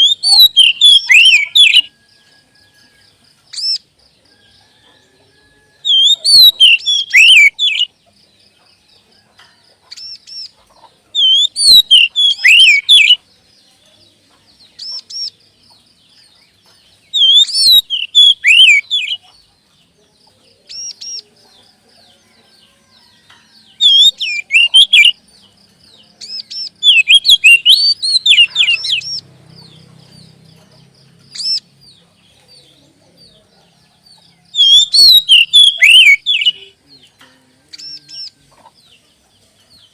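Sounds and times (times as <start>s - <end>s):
bird whistled song phrases: 0.0s - 2.0s, 5.9s - 7.9s, 11.2s - 13.2s, 17.2s - 19.2s, 23.7s - 25.2s, 26.2s - 29.2s, 34.6s - 36.8s.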